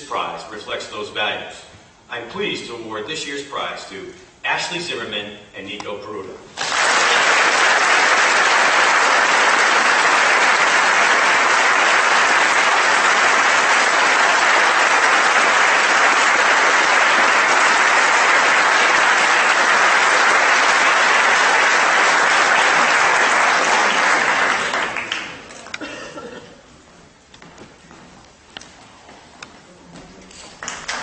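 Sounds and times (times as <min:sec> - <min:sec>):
audience applauding: 0:06.6 - 0:25.8, 0:30.6 - 0:31.0.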